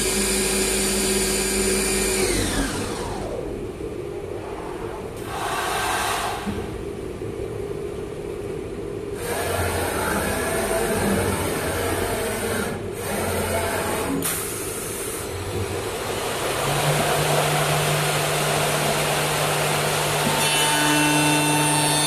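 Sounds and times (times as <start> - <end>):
lathe humming: 15.3 - 22.0.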